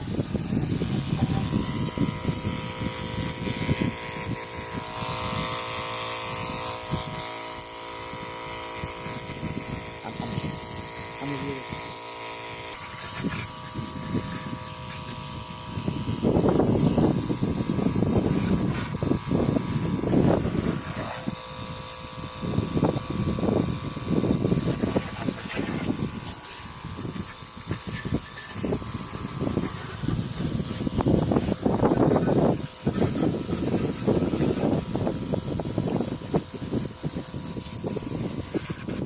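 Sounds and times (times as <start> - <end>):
electric pump motor humming: 0.0 - 39.0
water jet spraying: 0.0 - 39.0.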